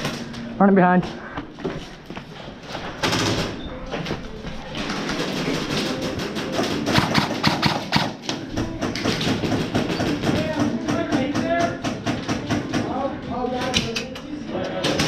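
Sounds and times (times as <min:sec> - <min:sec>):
airsoft guns firing: 0:04.8 - 0:13.0.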